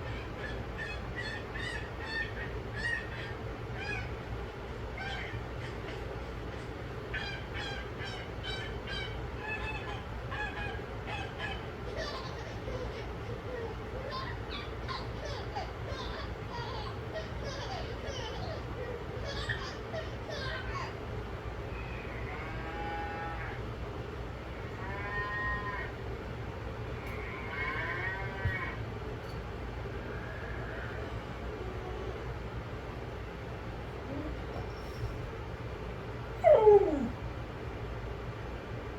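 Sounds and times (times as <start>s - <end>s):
animal calling: 0.0s - 35.4s
steady low hum: 0.0s - 38.9s
bird honking calls: 24.4s - 26.3s, 26.9s - 32.2s.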